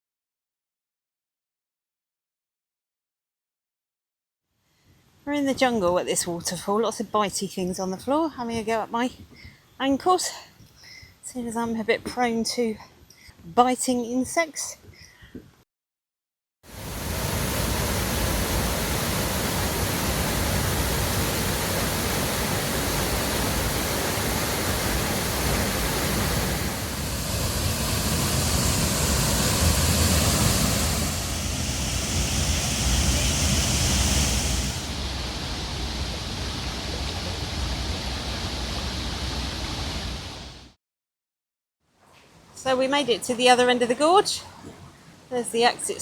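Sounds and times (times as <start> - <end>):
waterfall roar: 16.8 - 40.4.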